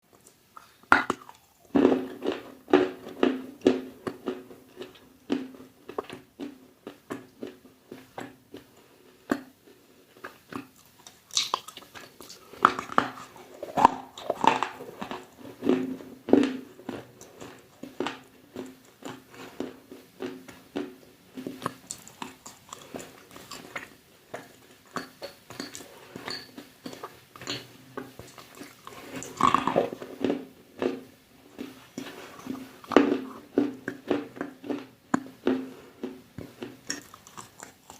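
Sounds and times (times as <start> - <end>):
chewing crunchy food: 0.1 - 37.9.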